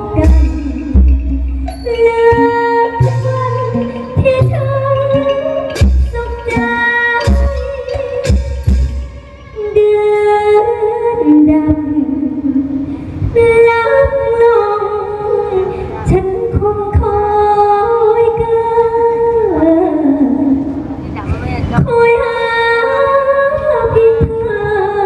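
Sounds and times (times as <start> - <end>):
woman singing slow melody: 0.0 - 8.4, 9.5 - 20.8, 21.6 - 25.0
musical accompaniment: 0.0 - 16.8
sharp percussive hits: 0.2 - 9.6.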